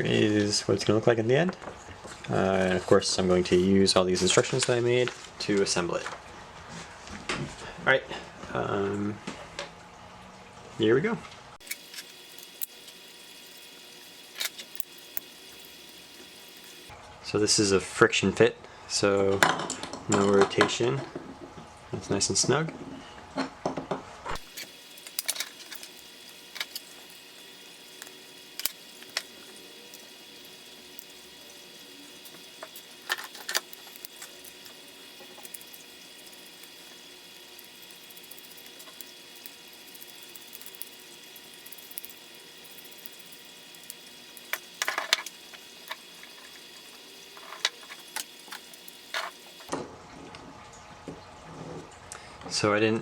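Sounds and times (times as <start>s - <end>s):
faint steady hiss: 24.4s - 49.7s.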